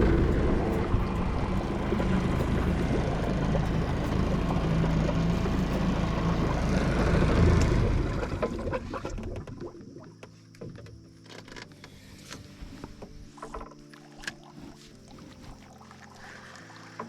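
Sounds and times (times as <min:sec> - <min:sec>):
boat motor running: 0:00.0 - 0:09.4
water rushing along hull: 0:00.0 - 0:10.3, 0:12.0 - 0:17.0.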